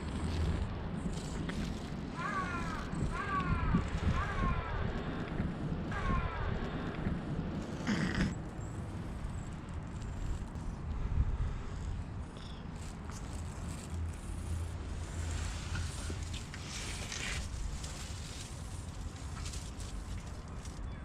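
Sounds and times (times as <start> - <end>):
cat purring: 7.6 - 10.7.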